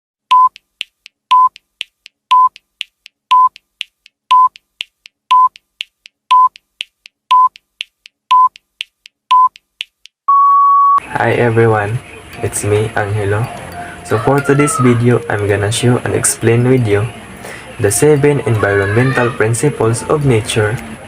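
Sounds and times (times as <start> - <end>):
short steady beeps: 0.3 - 0.6, 1.3 - 1.6, 2.3 - 2.6, 3.3 - 3.6, 4.3 - 4.6, 5.3 - 5.6, 6.3 - 6.6, 7.3 - 7.6, 8.3 - 8.6, 9.3 - 9.6, 10.3 - 11.0.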